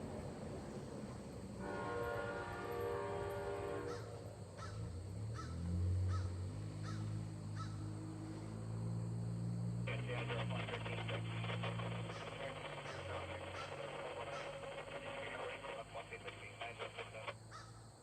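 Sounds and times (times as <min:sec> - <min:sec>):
diesel locomotive rumble: 0:00.0 - 0:17.5
locomotive air horn blasts: 0:01.6 - 0:04.4.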